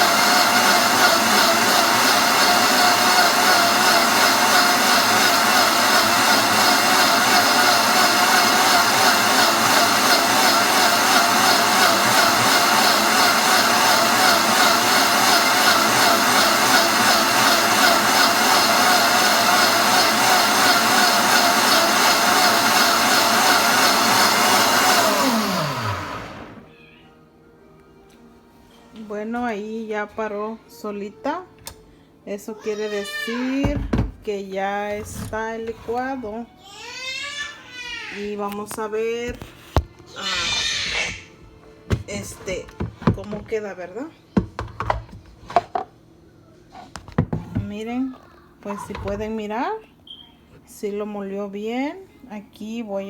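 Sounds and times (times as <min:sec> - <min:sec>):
blender running: 0:00.0 - 0:26.7.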